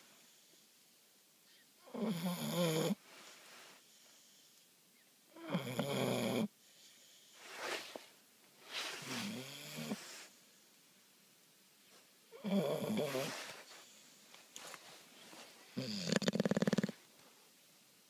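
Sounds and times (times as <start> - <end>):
dog snoring: 1.8 - 3.0, 5.4 - 6.5, 9.0 - 10.2, 12.3 - 13.5, 15.8 - 17.1.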